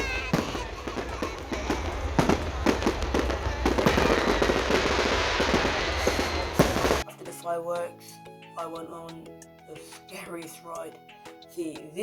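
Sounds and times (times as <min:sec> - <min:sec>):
fireworks bangs: 0:00.0 - 0:07.0
fireworks crackling: 0:00.0 - 0:07.0.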